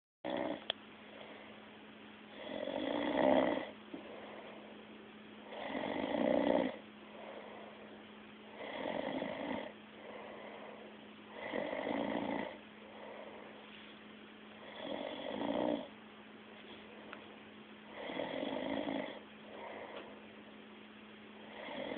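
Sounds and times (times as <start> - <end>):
person snoring: 0.3 - 0.7, 2.3 - 4.5, 5.5 - 7.5, 8.5 - 10.7, 11.3 - 13.5, 14.6 - 15.9, 17.9 - 20.0, 21.4 - 21.9.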